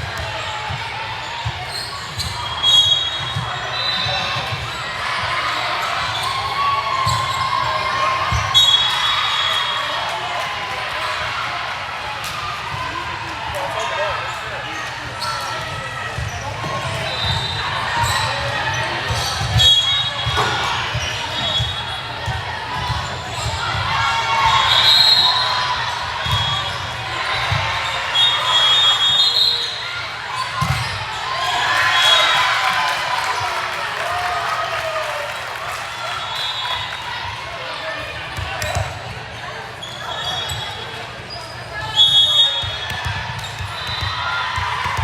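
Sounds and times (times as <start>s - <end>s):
spectators' voices: 0.0s - 45.0s
sneakers squeaking on gym floor: 0.2s - 10.0s, 13.6s - 32.4s, 38.4s - 45.0s.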